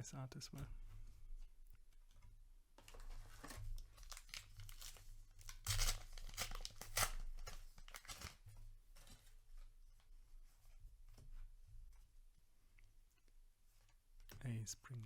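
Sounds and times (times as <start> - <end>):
paper wrapper tearing and crinkling: 2.9 - 8.4.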